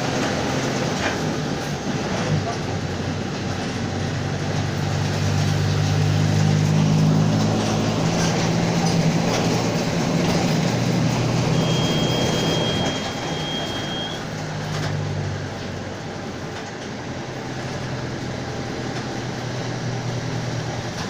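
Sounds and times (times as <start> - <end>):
bus engine droning: 0.0 - 21.0
high whine: 11.2 - 14.3.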